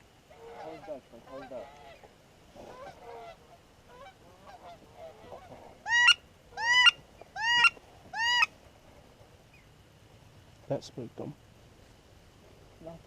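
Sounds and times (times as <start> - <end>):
goose honking: 0.3 - 8.5.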